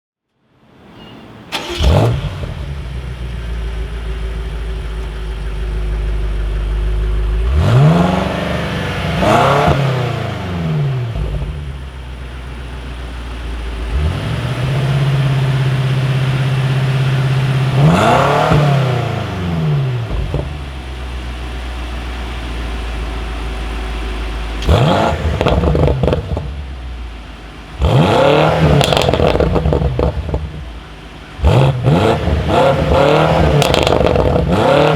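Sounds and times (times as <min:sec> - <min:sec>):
car exhaust revving and idling: 0:01.8 - 0:34.9
exhaust pops and crackles: 0:20.1 - 0:21.0, 0:24.5 - 0:26.6, 0:28.7 - 0:30.8, 0:33.4 - 0:34.5.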